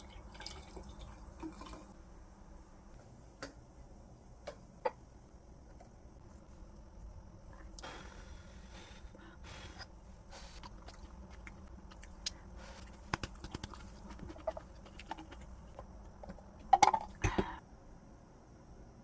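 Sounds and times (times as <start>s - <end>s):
person chewing: 10.4s - 15.8s.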